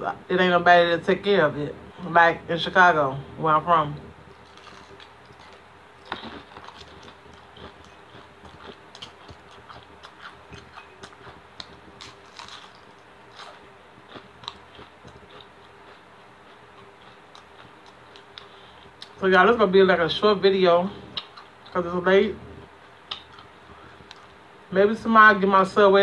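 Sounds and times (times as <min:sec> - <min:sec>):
person chewing food: 0:04.3 - 0:19.2, 0:21.0 - 0:21.8, 0:22.7 - 0:24.4.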